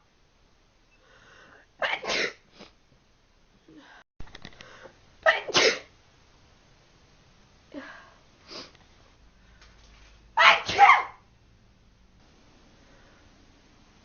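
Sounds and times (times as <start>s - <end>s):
person sneezing: 1.8s - 2.8s, 5.3s - 5.9s, 10.5s - 11.2s.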